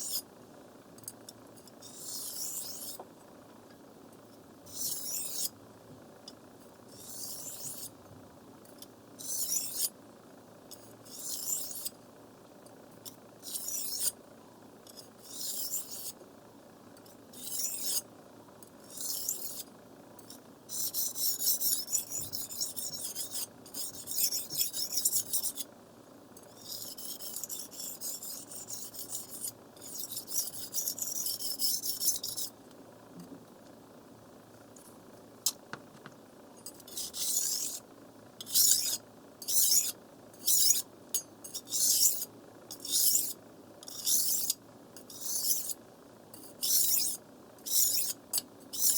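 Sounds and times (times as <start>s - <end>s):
knife scraping on whetstone: 0.0s - 0.2s, 1.6s - 3.0s, 4.7s - 5.6s, 6.9s - 7.9s, 9.2s - 10.0s, 10.7s - 11.9s, 13.4s - 14.2s, 14.9s - 16.2s, 17.3s - 18.1s, 18.8s - 25.7s, 26.4s - 32.6s, 36.6s - 37.8s, 38.4s - 40.8s, 41.5s - 45.8s, 46.4s - 48.9s.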